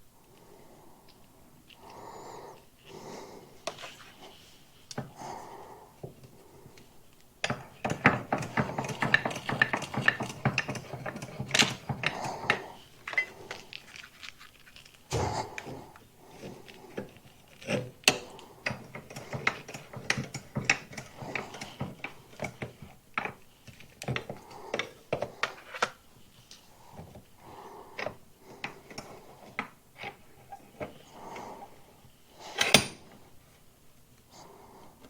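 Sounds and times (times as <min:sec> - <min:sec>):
tools clicking on metal parts: 0:07.4 - 0:13.6, 0:17.0 - 0:25.9, 0:32.5 - 0:33.1.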